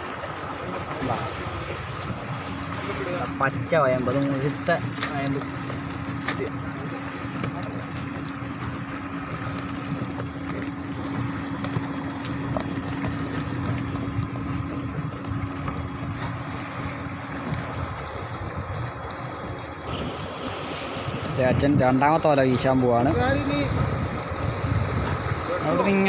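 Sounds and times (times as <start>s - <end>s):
pump motor humming: 0.0s - 26.0s
water rushing from outlet: 0.0s - 26.0s.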